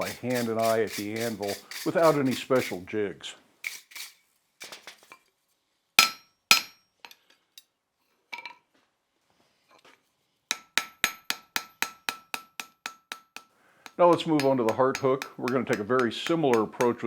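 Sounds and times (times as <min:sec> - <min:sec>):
hammer striking steel on anvil: 0:06.0 - 0:06.8, 0:10.5 - 0:17.0.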